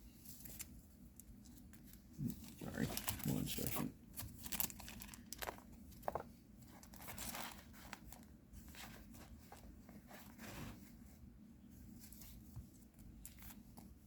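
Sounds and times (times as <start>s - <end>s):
wrapper crinkling and tearing: 2.5s - 6.2s.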